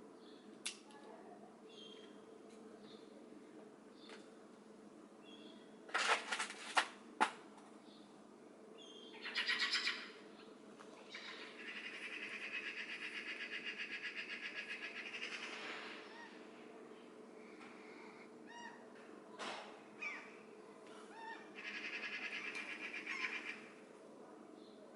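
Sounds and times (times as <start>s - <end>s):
bird calls and trills: 1.6s - 2.2s, 5.2s - 5.7s, 8.8s - 23.8s.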